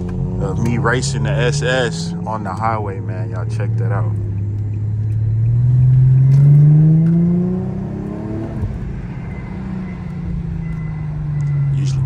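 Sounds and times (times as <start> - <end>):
car exhaust accelerating: 0.0 - 12.0.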